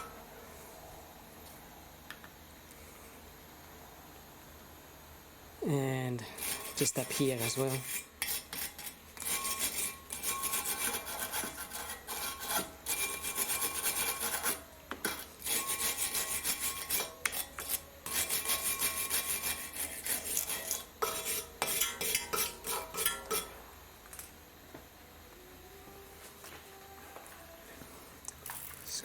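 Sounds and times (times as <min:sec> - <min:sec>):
wire brush scrubbing metal: 0:06.2 - 0:23.6.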